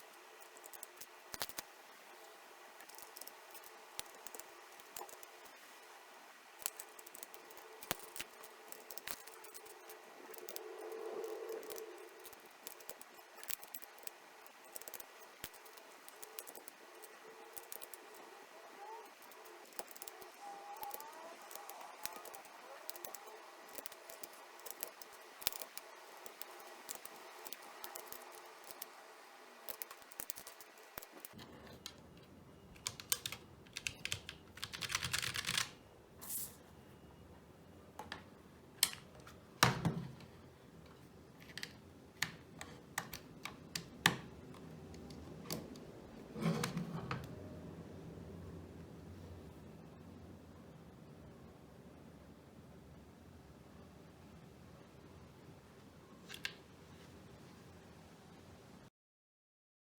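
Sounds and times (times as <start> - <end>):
keyboard plastic clicks and rattles: 0.2 - 1.6, 2.8 - 5.7, 6.6 - 28.9, 32.8 - 35.8.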